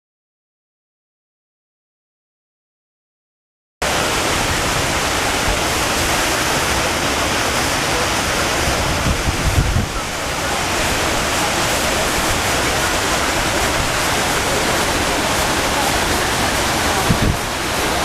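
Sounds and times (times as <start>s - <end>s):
fountain water splashing: 3.8s - 18.0s
wind on microphone: 8.5s - 18.0s.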